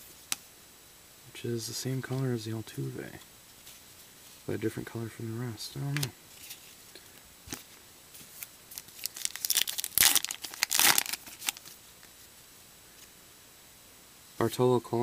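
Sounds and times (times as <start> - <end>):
card pack wrapper tearing: 8.4 - 11.8.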